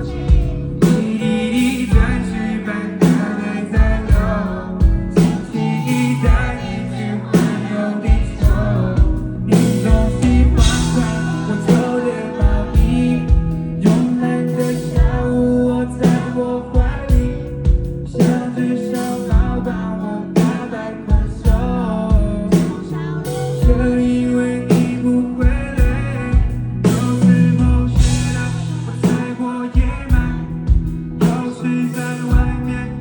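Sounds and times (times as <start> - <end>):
live pop band: 0.0 - 33.0
person singing: 0.0 - 33.0
drum beat: 8.1 - 13.6.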